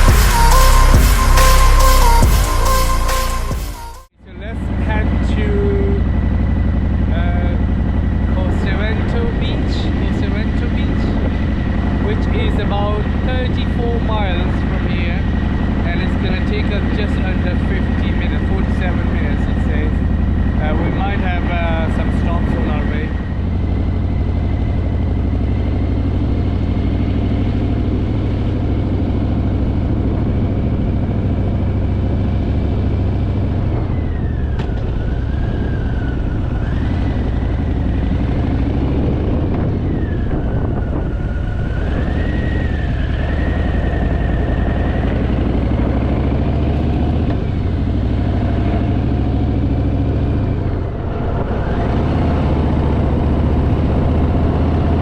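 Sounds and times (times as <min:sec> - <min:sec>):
thin high whistle: 0:00.0 - 0:04.1
motorcycle engine cruising: 0:04.4 - 0:55.0
riding wind rushing: 0:04.7 - 0:30.9, 0:33.4 - 0:55.0.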